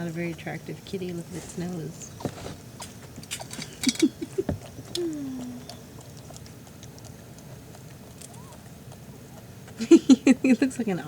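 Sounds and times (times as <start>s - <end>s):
cat licking kittens wetly: 0.0s - 11.0s
kitten squeaks: 8.2s - 8.6s.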